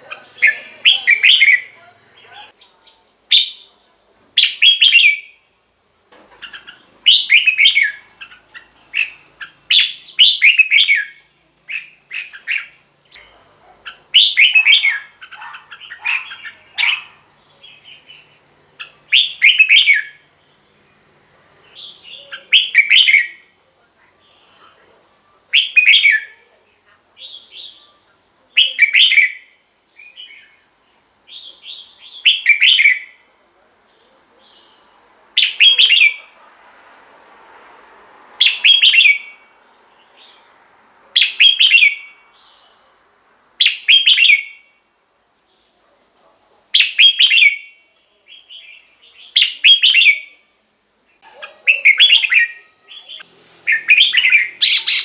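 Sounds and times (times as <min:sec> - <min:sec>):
bird singing warbled phrases: 0:00.0 - 0:03.8, 0:04.4 - 0:05.5, 0:06.3 - 0:20.3, 0:21.5 - 0:24.9, 0:25.5 - 0:26.5, 0:27.1 - 0:30.7, 0:31.3 - 0:36.4, 0:38.4 - 0:40.5, 0:41.2 - 0:42.8, 0:43.6 - 0:44.7, 0:46.8 - 0:50.5, 0:51.1 - 0:55.0.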